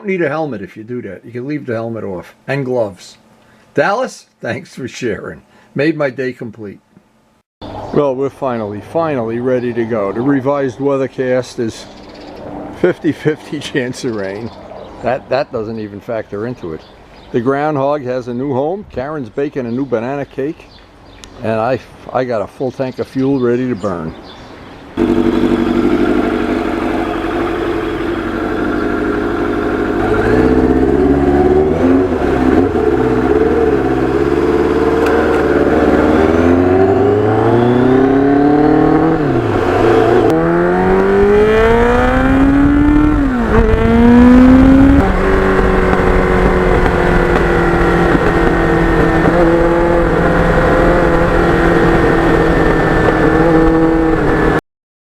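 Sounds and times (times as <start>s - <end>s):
motorcycle engine accelerating: 25.0s - 54.6s.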